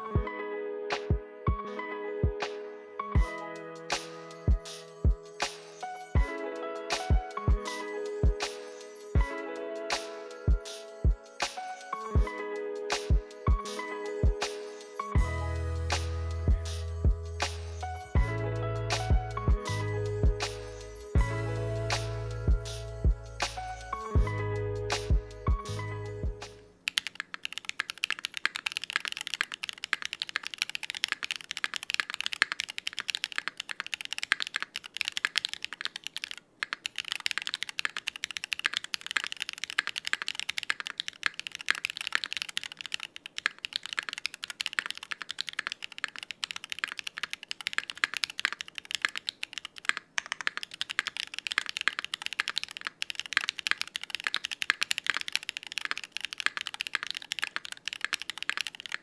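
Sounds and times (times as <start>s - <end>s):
music: 0.0s - 26.8s.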